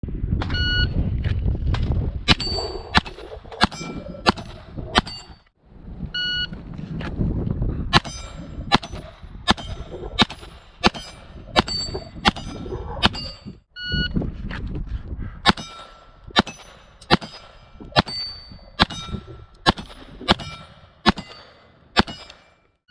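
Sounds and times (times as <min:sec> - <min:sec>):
electronic beep: 0:00.5 - 0:01.0, 0:06.2 - 0:06.6, 0:13.2 - 0:14.2
bullet hitting steel target: 0:15.5 - 0:22.6
rapid pistol shots: 0:19.6 - 0:22.5.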